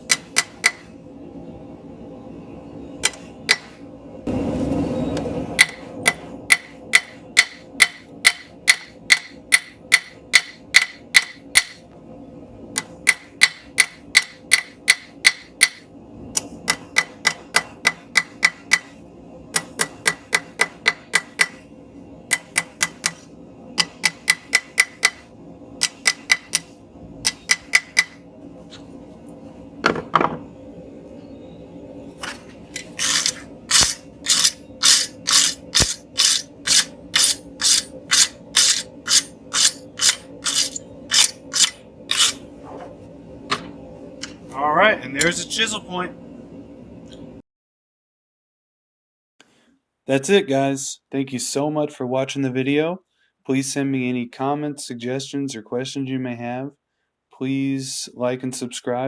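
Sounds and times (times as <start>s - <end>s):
hammer striking steel on anvil: 5.6s - 11.8s, 13.0s - 15.8s, 16.7s - 18.9s, 19.6s - 21.6s, 22.3s - 23.2s, 23.8s - 25.2s, 25.8s - 28.2s, 33.1s - 42.4s.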